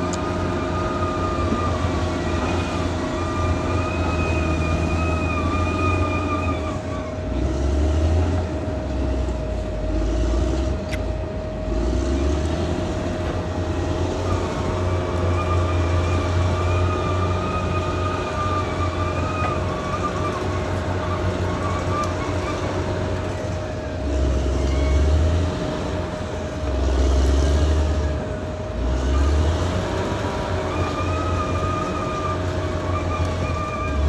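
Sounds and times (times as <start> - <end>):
wavering high whine: 0.0 - 12.4
bulldozer diesel engine rumbling: 0.0 - 34.0.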